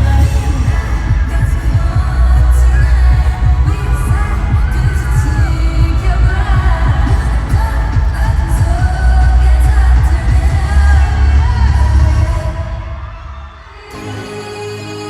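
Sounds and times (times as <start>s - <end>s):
girl group singing: 0.0s - 15.0s
pop backing track with heavy bass: 0.0s - 15.0s.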